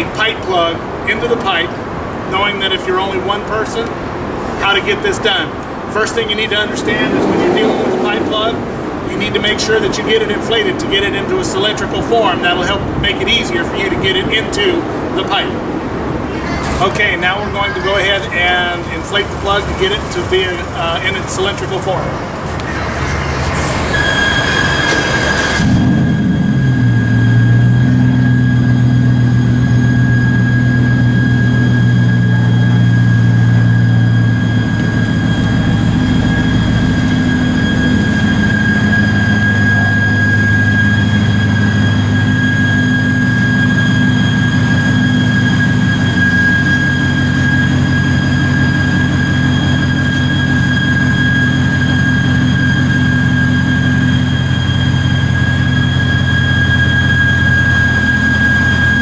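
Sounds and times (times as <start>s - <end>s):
low droning hum: 0.0s - 59.0s
high air whistle: 16.2s - 22.1s, 22.8s - 59.0s.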